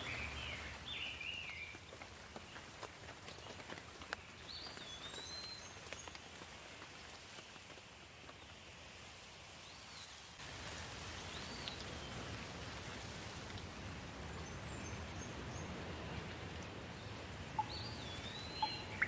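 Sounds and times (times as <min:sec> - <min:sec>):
steady rain: 0:00.0 - 0:19.0
raindrops ticking: 0:10.4 - 0:19.0.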